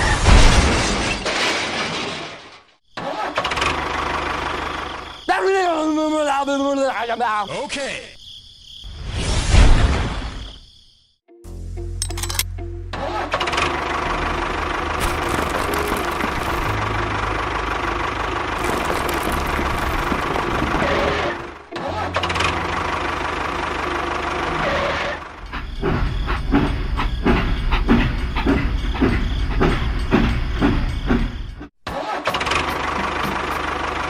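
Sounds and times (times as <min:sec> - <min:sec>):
engine running: 0:11.9 - 0:31.6.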